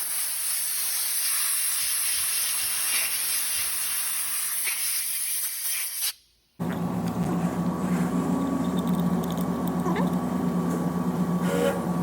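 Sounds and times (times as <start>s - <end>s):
pressurised spray hissing: 0.0s - 6.2s.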